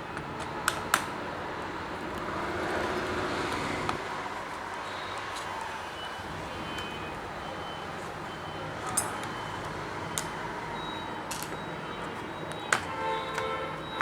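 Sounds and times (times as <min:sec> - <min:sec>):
clicks of laptop parts and tools: 0:00.1 - 0:01.2, 0:08.8 - 0:09.4, 0:11.3 - 0:11.7, 0:12.5 - 0:14.0.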